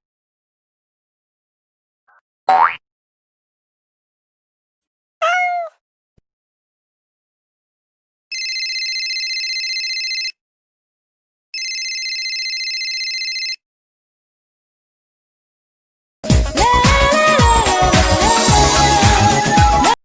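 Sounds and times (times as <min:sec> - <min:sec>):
cat meow: 0:05.2 - 0:05.8
telephone ringing: 0:08.3 - 0:10.4, 0:11.6 - 0:13.6.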